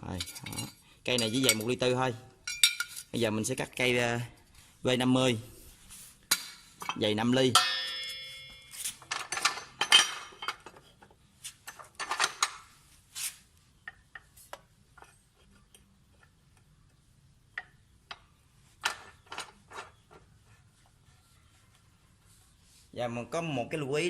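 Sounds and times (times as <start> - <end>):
steel bar clinking and scraping: 0.0 - 3.2, 6.3 - 12.6.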